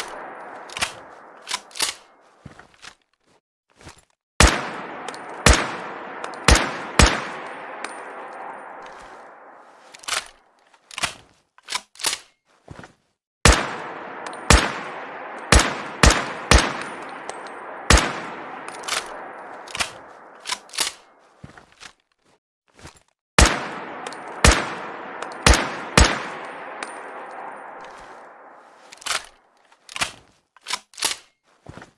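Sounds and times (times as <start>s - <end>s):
rifle gunshots echoing: 0.0s - 2.2s, 4.4s - 10.3s, 13.4s - 21.2s, 23.4s - 29.3s
rifle clicks and clacks: 0.0s - 3.0s, 4.4s - 12.4s, 13.5s - 21.1s, 23.4s - 31.4s.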